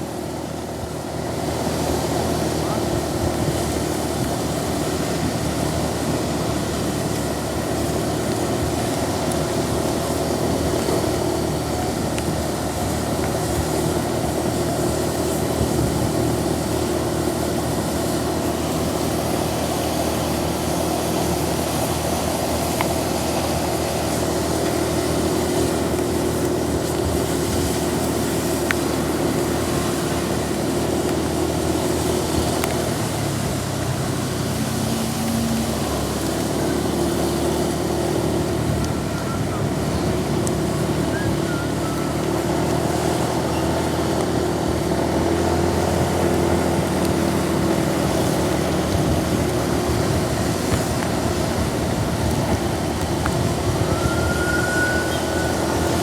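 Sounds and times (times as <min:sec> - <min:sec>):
heavy rain hissing: 0:00.0 - 0:56.0
vehicle engines droning: 0:00.0 - 0:56.0.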